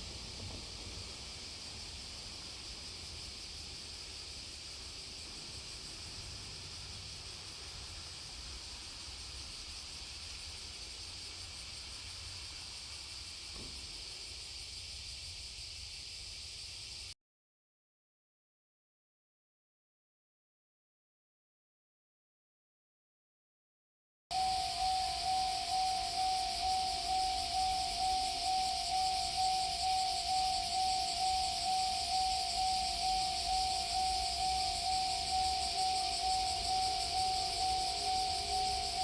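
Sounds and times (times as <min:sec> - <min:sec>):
low outdoor rumble: 0:00.0 - 0:15.0
cicadas shrilling: 0:00.0 - 0:17.1, 0:24.3 - 0:39.0.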